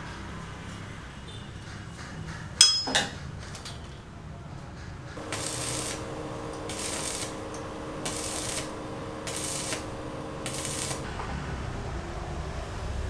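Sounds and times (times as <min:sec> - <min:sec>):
rhythmic rasping strokes: 0:05.2 - 0:11.2
steady hum: 0:05.2 - 0:11.2.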